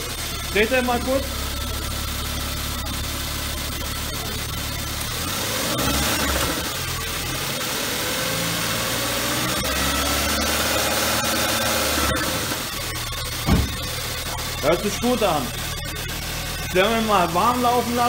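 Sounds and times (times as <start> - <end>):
car engine idling and revving: 0.0 - 18.0.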